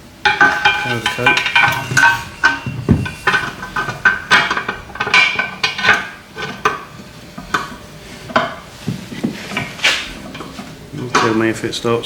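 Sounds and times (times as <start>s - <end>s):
metal tools clinking on metal: 0.3s - 6.8s.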